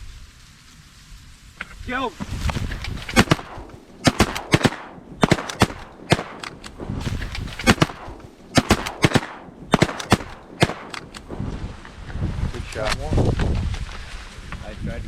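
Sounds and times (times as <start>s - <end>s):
shotguns firing: 2.6s - 11.5s.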